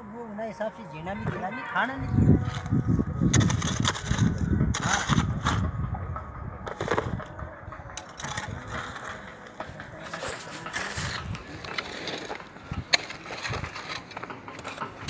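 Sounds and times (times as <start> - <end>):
hand tools scraping and scuffing: 2.4 - 5.7, 8.0 - 15.0.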